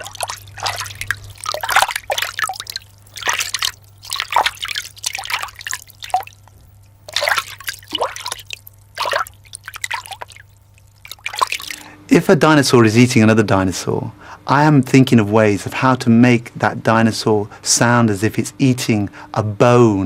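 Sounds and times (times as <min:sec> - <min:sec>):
water splashing and dripping: 0:00.0 - 0:11.9.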